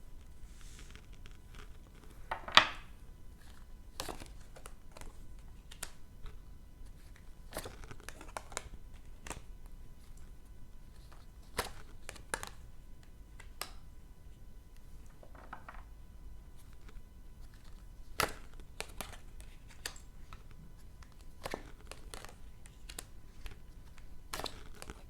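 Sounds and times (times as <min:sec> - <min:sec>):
cards shuffling and snapping: 0:17.5 - 0:25.0.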